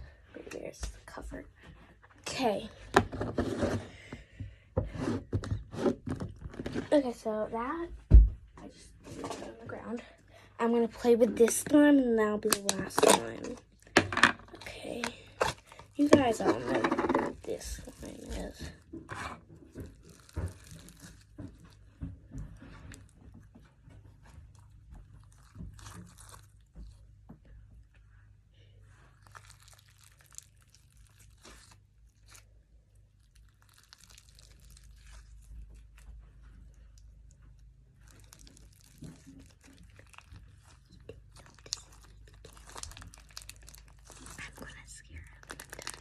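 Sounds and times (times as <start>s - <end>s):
slime squishing clicks and rustling: 10.9s - 22.0s, 24.4s - 27.1s, 29.1s - 46.0s.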